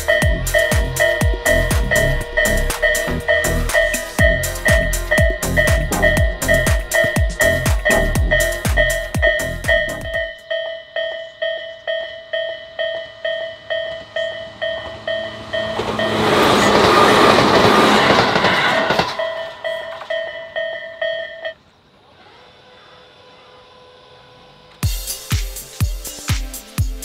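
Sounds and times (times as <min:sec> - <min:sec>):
train wheels rushing on rail: 0:00.0 - 0:10.4, 0:11.8 - 0:20.8
level-crossing warning bell: 0:00.0 - 0:21.6.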